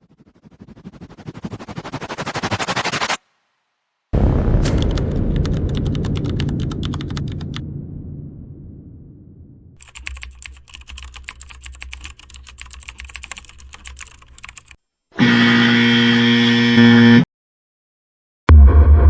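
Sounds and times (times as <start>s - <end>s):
computer keyboard typing: 4.9s - 7.5s, 9.8s - 14.8s.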